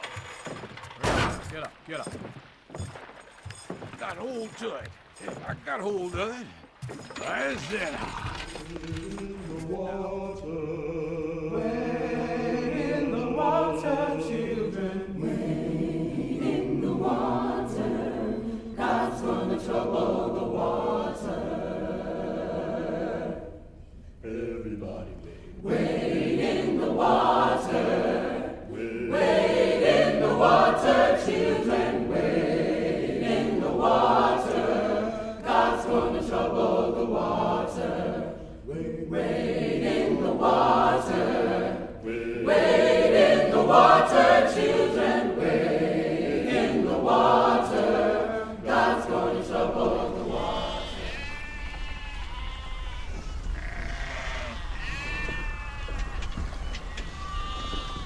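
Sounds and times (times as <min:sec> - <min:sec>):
group singing a cappella: 0:08.4 - 0:52.3.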